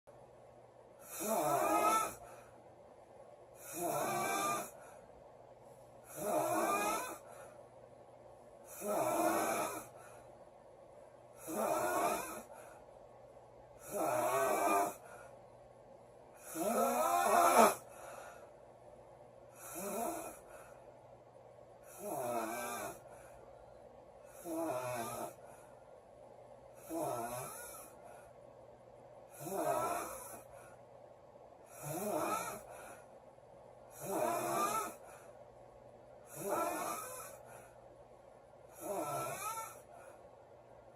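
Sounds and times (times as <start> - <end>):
woman snoring loudly: 1.0 - 2.3, 3.6 - 4.8, 6.1 - 7.3, 8.7 - 10.0, 11.4 - 12.6, 13.8 - 15.1, 16.4 - 17.9, 19.6 - 20.5, 21.9 - 23.1, 24.3 - 25.4, 26.8 - 28.0, 29.3 - 30.5, 31.7 - 32.8, 33.9 - 35.2, 36.3 - 37.4, 38.7 - 39.9.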